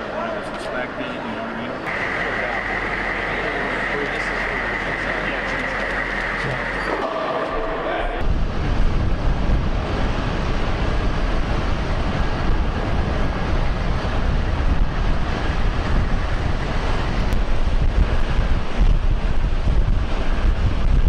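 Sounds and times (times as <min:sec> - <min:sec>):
low vehicle rumble: 0:01.8 - 0:21.0
wind noise on microphone: 0:08.2 - 0:21.0.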